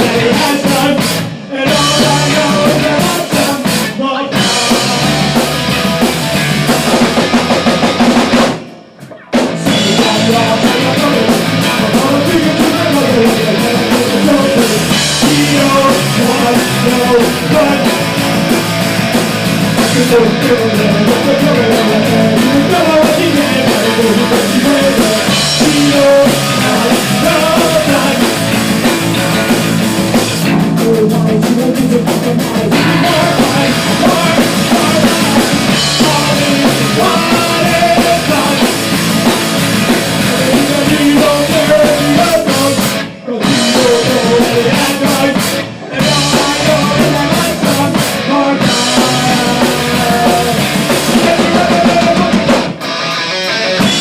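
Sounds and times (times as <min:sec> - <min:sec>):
bass drum: 0:00.0 - 0:08.7, 0:09.5 - 0:52.6
rock band music: 0:00.0 - 0:54.0.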